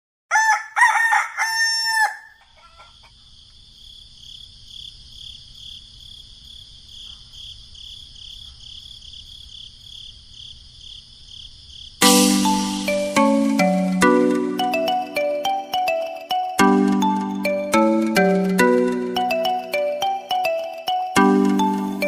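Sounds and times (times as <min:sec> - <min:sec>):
rooster crowing: 0:00.3 - 0:03.2
crickets chirping: 0:01.4 - 0:12.7
marimba-like music: 0:12.0 - 0:22.0.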